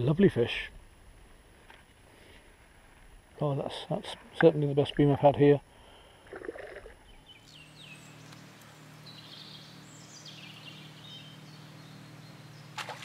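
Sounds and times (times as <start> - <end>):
songbird singing: 3.4 - 13.0.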